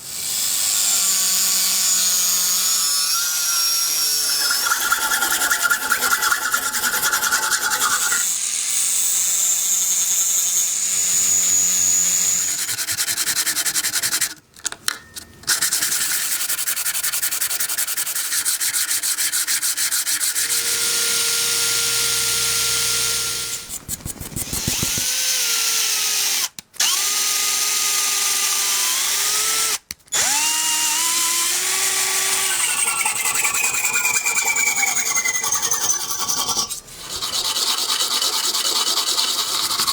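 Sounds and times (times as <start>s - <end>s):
power tool grinding: 0.1s - 9.2s, 19.9s - 39.9s.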